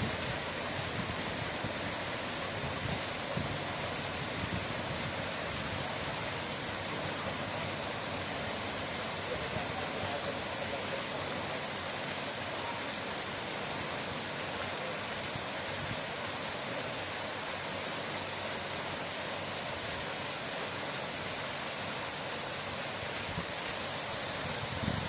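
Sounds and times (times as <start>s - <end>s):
rushing water: 0.0s - 25.0s.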